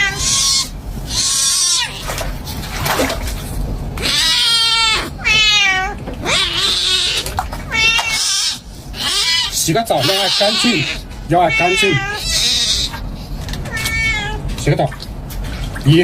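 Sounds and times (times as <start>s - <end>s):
cat meowing and yowling: 0.0s - 2.1s, 4.0s - 13.0s, 13.7s - 14.4s.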